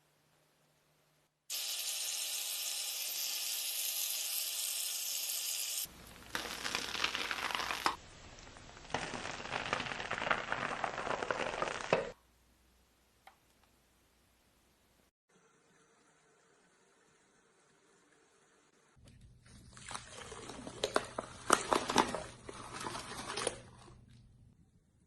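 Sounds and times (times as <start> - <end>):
slime crackling and popping: 6.1 - 12.2.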